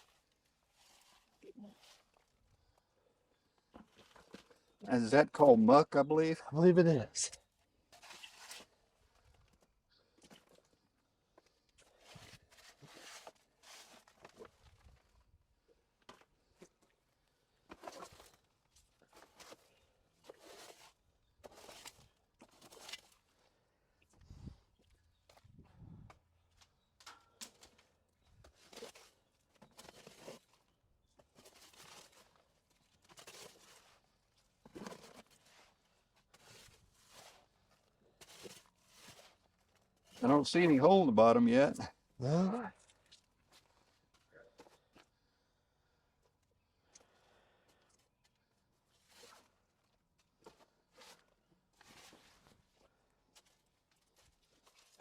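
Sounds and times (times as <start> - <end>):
faint scuffs and rustles: 0.0 - 4.8, 27.5 - 40.8, 48.2 - 55.0.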